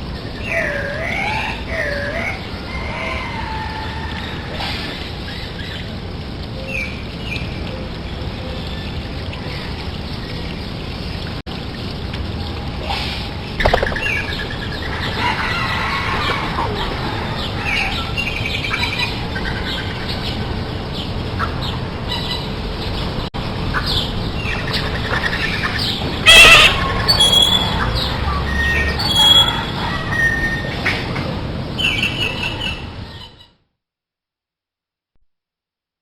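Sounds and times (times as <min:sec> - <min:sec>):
steady background noise: 0:00.0 - 0:33.6
birds chirping and calling: 0:23.7 - 0:33.4.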